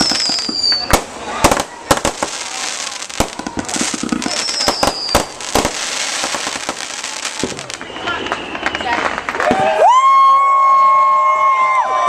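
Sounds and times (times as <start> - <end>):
fireworks whistle: 0.0 - 1.0, 3.2 - 10.1
fireworks bangs and crackles: 0.0 - 10.2.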